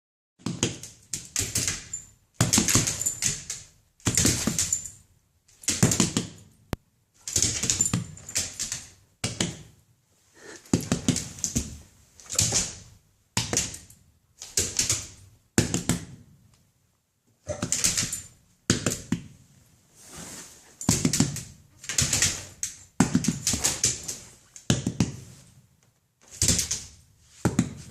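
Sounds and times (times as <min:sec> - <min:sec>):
puppy claws tapping on floor: 0:00.4 - 0:06.4, 0:07.2 - 0:09.7, 0:10.6 - 0:16.2, 0:20.8 - 0:25.2.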